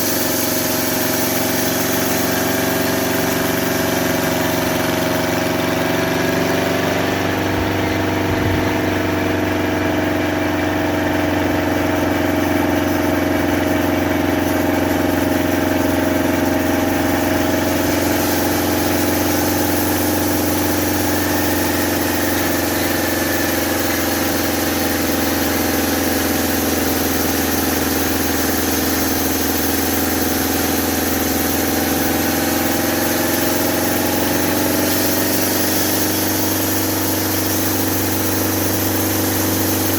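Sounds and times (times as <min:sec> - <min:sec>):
sawmill motor droning: 0:00.0 - 0:39.9.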